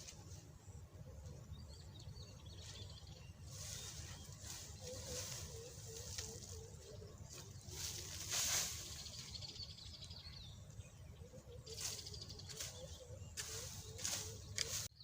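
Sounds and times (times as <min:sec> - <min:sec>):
dry grass rustling: 0:00.0 - 0:00.6, 0:02.5 - 0:10.1, 0:11.5 - 0:15.0
faint bird chirps: 0:00.3 - 0:15.0.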